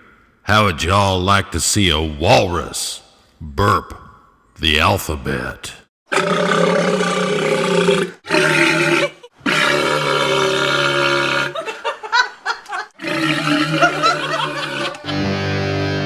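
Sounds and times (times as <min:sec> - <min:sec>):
walrus burping calls: 0:06.1 - 0:11.6, 0:13.0 - 0:15.0.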